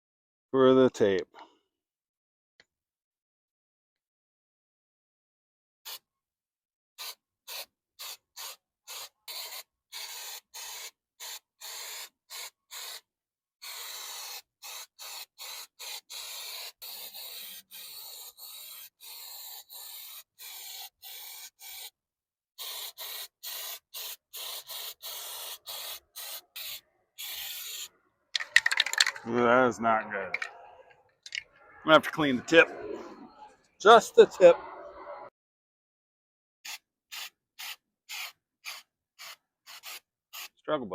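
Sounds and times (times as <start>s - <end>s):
spray can hissing: 7.0s - 13.0s, 13.6s - 22.0s, 22.6s - 29.2s, 36.6s - 40.6s.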